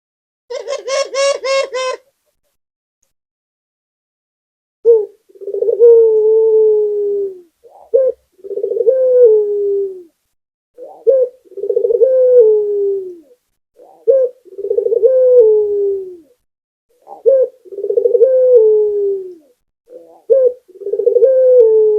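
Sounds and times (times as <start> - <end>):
dove cooing: 0.5 - 2.0, 4.9 - 10.2, 10.8 - 21.9.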